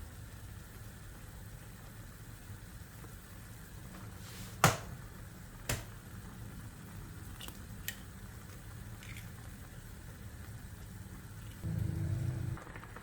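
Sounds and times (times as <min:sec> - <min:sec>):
steady low rumble: 0:11.6 - 0:13.0.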